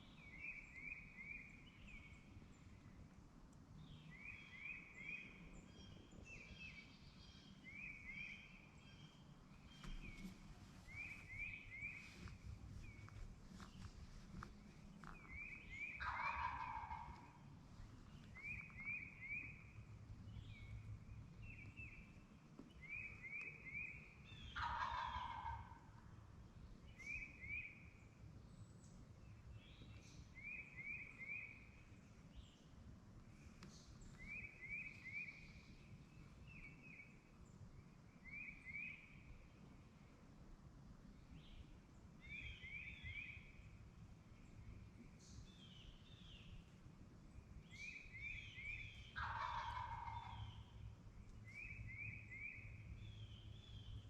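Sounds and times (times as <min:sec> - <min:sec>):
turkey gobbling: 0:15.8 - 0:17.4, 0:24.6 - 0:25.8, 0:49.0 - 0:50.6.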